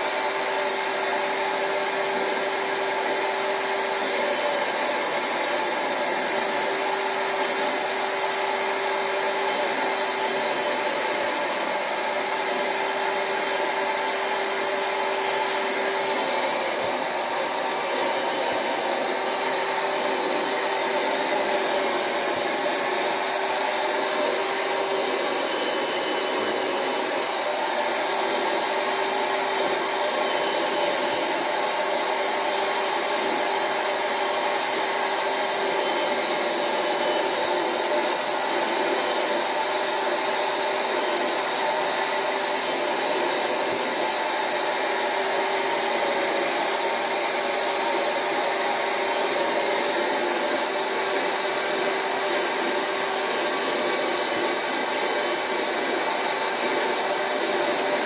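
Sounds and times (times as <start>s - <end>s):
carpet extractor vacuum motor: 0.0s - 58.0s.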